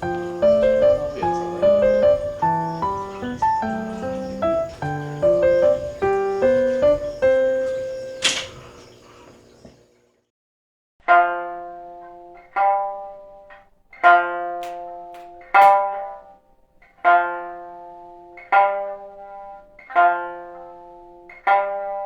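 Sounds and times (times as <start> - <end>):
plucked string instrument: 0.0 - 7.8, 11.0 - 22.0.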